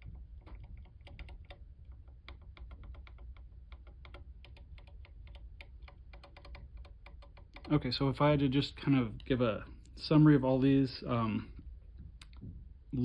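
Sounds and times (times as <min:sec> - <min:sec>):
mechanical keyboard typing: 0:00.0 - 0:07.9.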